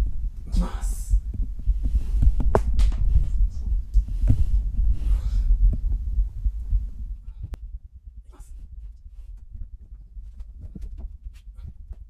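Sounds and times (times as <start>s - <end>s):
heartbeat thumping: 0.0s - 12.0s
body knocks and rustles: 1.4s - 7.0s, 9.3s - 12.0s.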